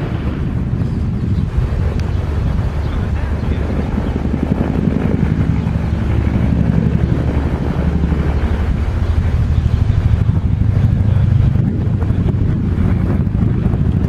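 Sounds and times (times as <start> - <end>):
helicopter rotor drone: 0.0 - 14.0
wind buffeting microphone: 0.0 - 14.0.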